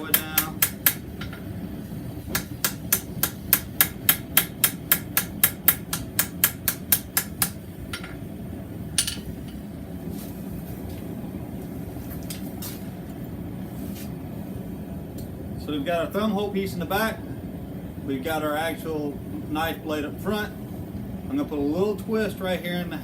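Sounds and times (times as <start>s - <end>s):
hammer striking steel bar on anvil: 0.1s - 1.4s, 2.3s - 8.2s, 9.0s - 9.4s.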